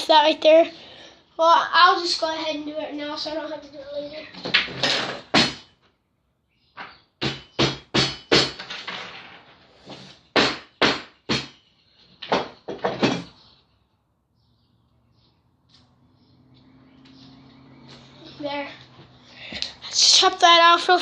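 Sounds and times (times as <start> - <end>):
wooden machete chopping knocks: 6.8 - 8.6, 10.4 - 11.6.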